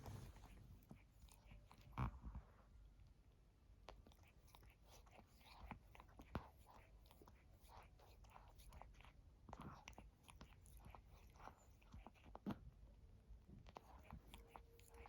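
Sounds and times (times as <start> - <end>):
cat licking its fur: 3.9 - 12.6, 13.6 - 15.0.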